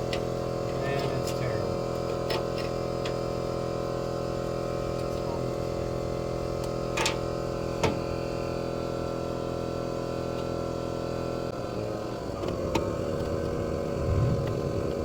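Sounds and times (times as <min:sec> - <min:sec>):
air compressor running: 0:00.0 - 0:15.0.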